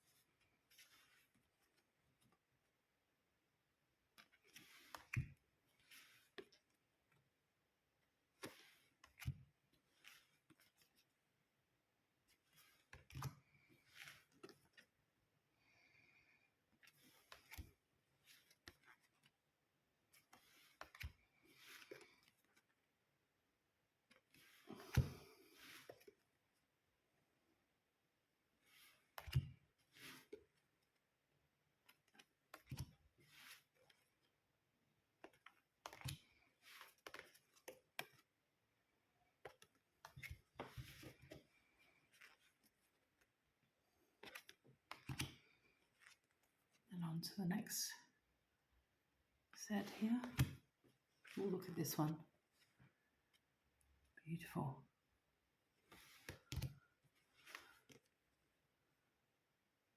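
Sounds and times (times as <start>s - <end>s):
cards clicking and sliding: 8.4s - 11.0s, 12.4s - 14.9s, 16.8s - 19.3s, 20.2s - 22.7s, 35.2s - 38.3s, 39.4s - 43.3s, 44.2s - 46.4s, 49.8s - 50.6s, 55.9s - 58.2s
cards swishing: 20.2s - 22.6s, 57.3s - 58.0s
cards sliding: 20.2s - 22.7s, 35.3s - 38.2s, 44.2s - 46.4s, 55.9s - 56.7s, 57.3s - 58.1s.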